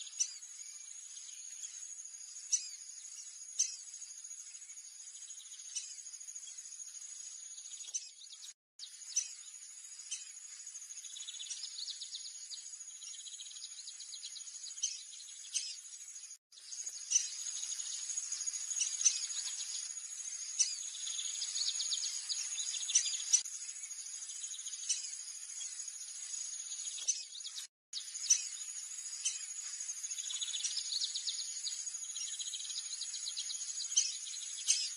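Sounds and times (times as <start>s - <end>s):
sharp bird chirps: 0.0s - 34.9s
high-pitched insect trilling: 15.7s - 34.9s
rapid bird trills: 16.6s - 34.9s.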